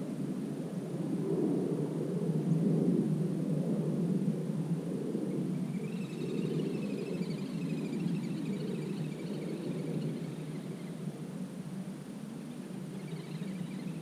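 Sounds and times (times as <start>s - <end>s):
small birds twittering: 5.4s - 11.2s, 12.4s - 14.0s.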